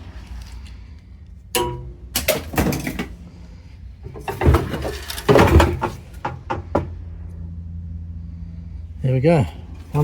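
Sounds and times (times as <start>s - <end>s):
sharp metal knocks: 1.5s - 3.0s
metal parts scraping and clanking: 4.0s - 6.2s.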